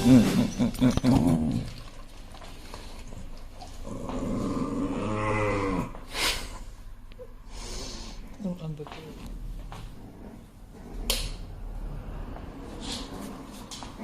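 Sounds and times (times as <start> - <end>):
dog growling: 0.0 - 2.0, 3.6 - 6.0, 9.9 - 11.5.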